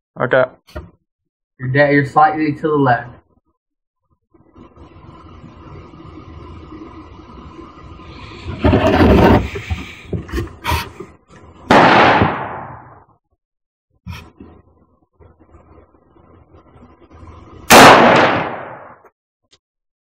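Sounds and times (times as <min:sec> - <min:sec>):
rifle shot echoing: 0:11.7 - 0:13.0, 0:17.7 - 0:19.0.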